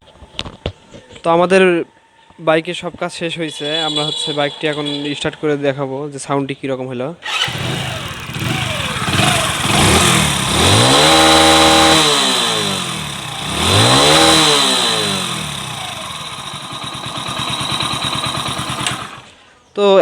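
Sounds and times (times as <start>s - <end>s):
motorcycle engine idling and revving: 7.2s - 19.4s.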